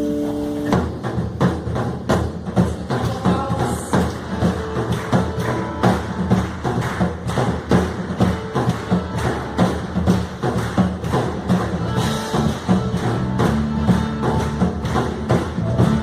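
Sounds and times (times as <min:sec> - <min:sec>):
bass and keys sustaining notes: 0:00.0 - 0:01.2, 0:04.2 - 0:16.0
drum kit playing quick beat: 0:00.0 - 0:16.0.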